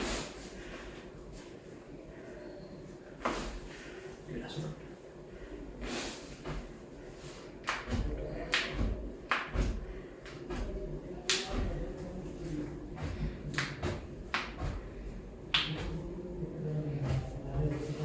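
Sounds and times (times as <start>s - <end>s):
hands slapping on body: 7.6s - 11.8s, 13.0s - 14.9s, 15.5s - 16.0s.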